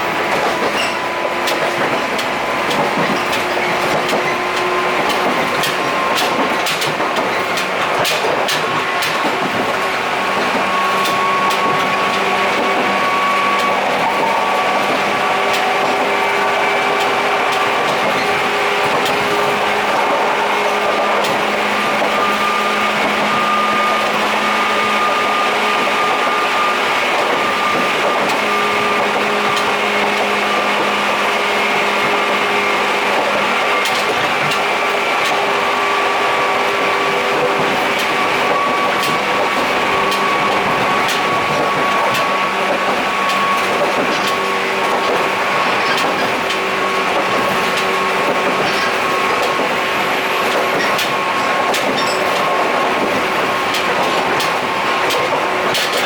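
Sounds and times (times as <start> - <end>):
electric train motor whine: 0.0 - 56.0
sharp clicks and knocks: 0.2 - 23.4, 33.0 - 35.5, 36.7 - 49.8, 50.4 - 56.0.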